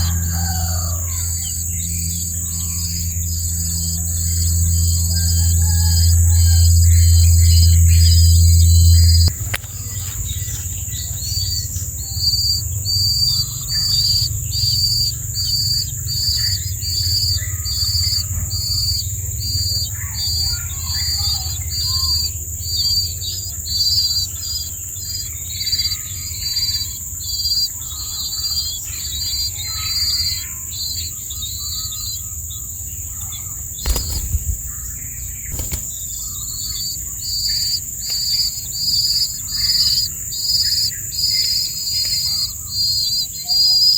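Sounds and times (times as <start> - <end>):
insects chirping: 0.0 - 43.9
sharp clicks: 35.5 - 36.0.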